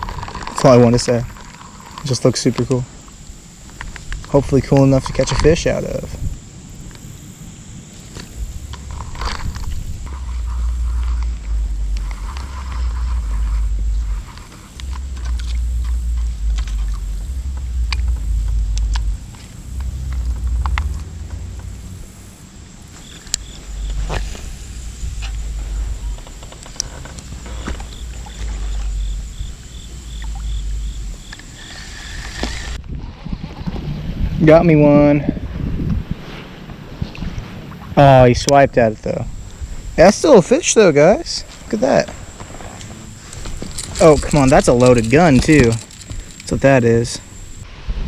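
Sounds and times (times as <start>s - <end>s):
wind buffeting microphone: 0.0s - 48.0s
fishing reel ticking: 43.3s - 47.5s.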